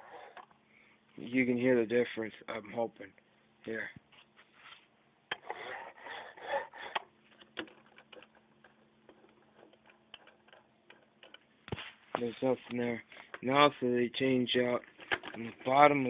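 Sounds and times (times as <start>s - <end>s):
sensor wiper scraping and clicking: 0.0s - 0.5s, 4.6s - 12.4s.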